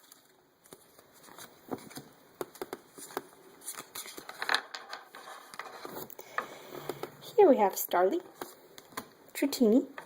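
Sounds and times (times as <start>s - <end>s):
foil wrapper and cards rustling: 0.0s - 6.1s.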